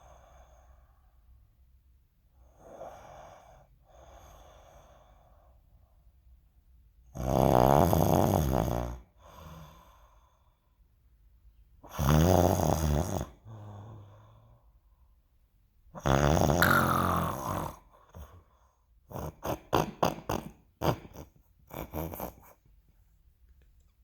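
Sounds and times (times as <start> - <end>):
person snoring loudly: 11.9 - 13.4, 16.0 - 17.8.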